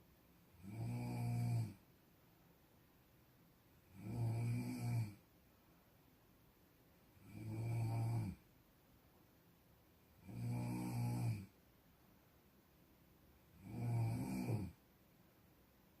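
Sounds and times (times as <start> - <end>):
person snoring: 0.6 - 1.8, 3.9 - 5.2, 7.2 - 8.4, 10.2 - 11.5, 13.6 - 14.8
quiet breathing: 13.4 - 14.9.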